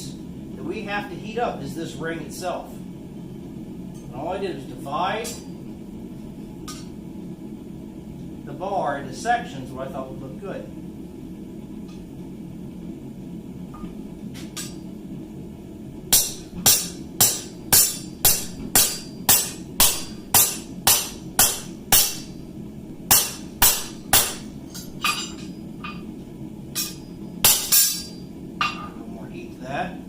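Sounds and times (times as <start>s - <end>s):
hammer striking steel on anvil: 16.1s - 22.4s, 23.1s - 26.1s, 26.8s - 29.0s.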